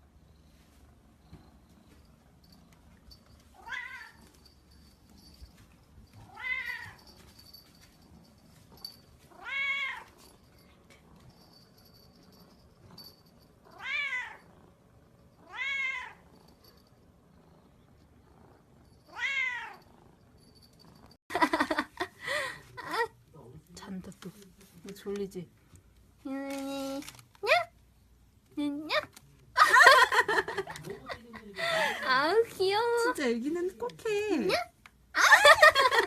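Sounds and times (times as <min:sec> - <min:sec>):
cat meowing: 0:03.6 - 0:04.2, 0:06.3 - 0:07.0, 0:09.3 - 0:10.1, 0:13.7 - 0:14.4, 0:15.4 - 0:16.2, 0:19.1 - 0:19.8.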